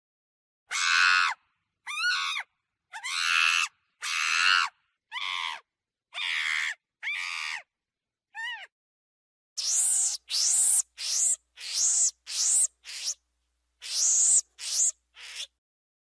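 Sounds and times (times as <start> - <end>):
monkey screeching: 0.7 - 5.6, 6.2 - 7.6, 9.6 - 13.2, 13.8 - 15.6.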